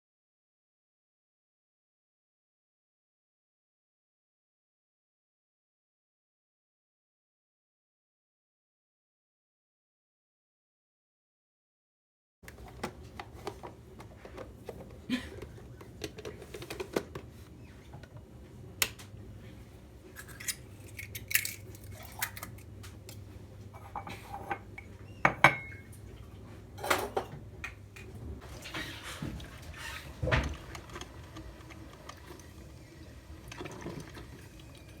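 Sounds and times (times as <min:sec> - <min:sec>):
dishes and cutlery clinking: 0:23.8 - 0:26.0, 0:26.8 - 0:27.4.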